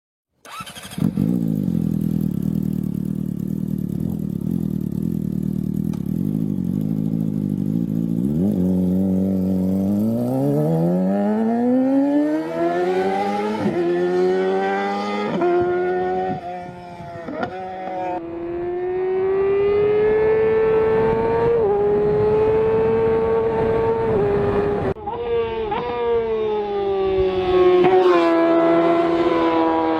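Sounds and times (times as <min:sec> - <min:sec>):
motorcycle engine: 0:00.4 - 0:29.9.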